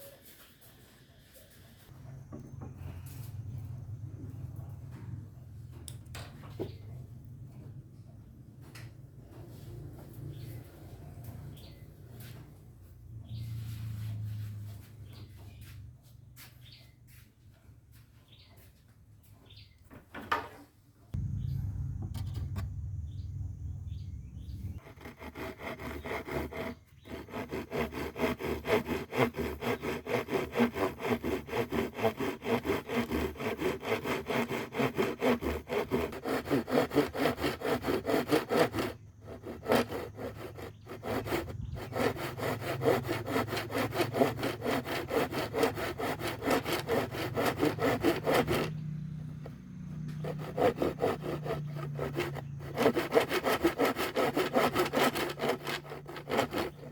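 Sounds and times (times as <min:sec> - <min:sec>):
hand saw cutting wood: 0:24.7 - 0:56.9.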